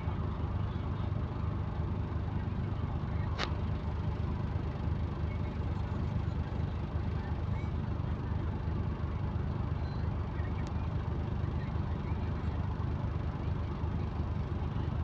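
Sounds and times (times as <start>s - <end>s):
bus engine rumbling: 0.0s - 15.0s
sharp click: 3.4s - 3.6s.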